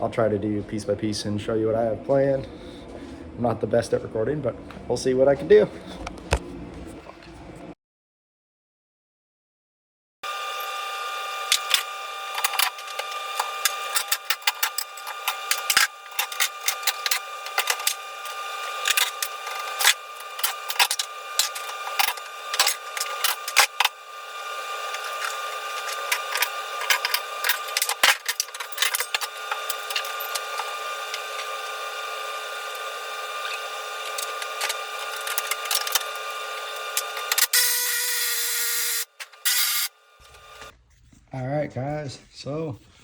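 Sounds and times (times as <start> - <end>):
steady high hum: 10.5 - 40.7.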